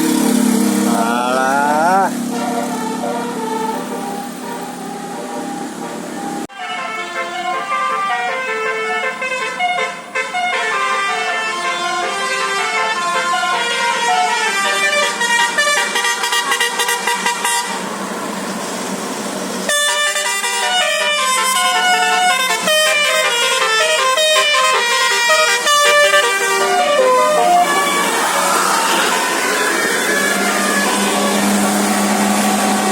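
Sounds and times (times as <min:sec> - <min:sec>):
bus horn playing a melody: 0:00.8 - 0:17.8, 0:19.7 - 0:29.4.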